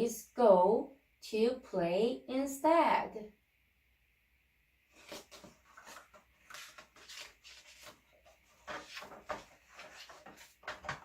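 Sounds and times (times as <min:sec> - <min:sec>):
book pages rustling: 0:04.9 - 0:11.0.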